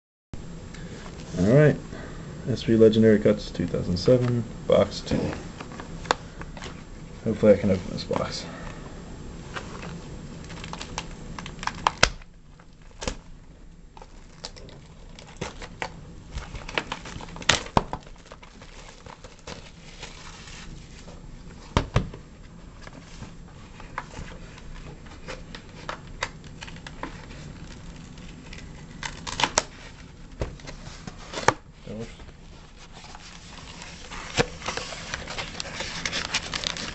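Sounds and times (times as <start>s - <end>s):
plastic wrapping tearing and crinkling: 9.6s - 21.9s, 22.8s - 36.9s.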